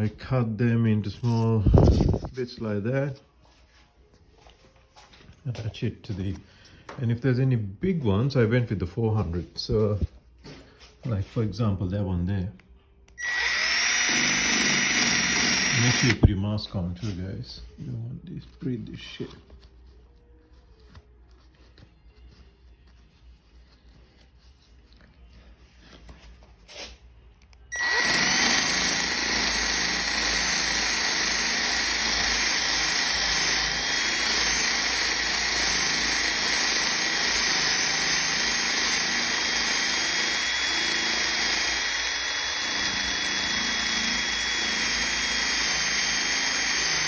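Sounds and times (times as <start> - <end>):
power sander whining: 13.2 - 16.3, 27.7 - 47.0.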